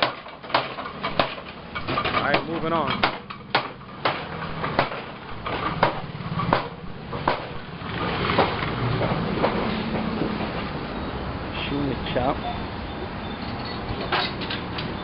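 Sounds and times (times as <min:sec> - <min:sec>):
metallic knocks: 0:00.0 - 0:10.6
street noise: 0:00.0 - 0:15.0
low engine hum: 0:02.6 - 0:15.0.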